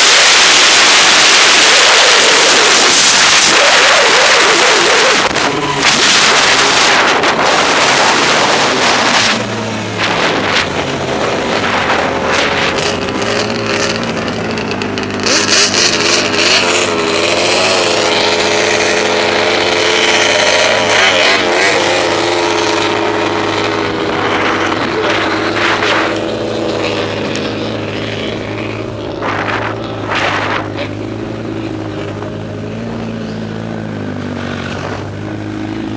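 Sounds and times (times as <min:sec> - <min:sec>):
wind noise: 0:00.0 - 0:34.0
snowmobile engine running: 0:00.0 - 0:35.9.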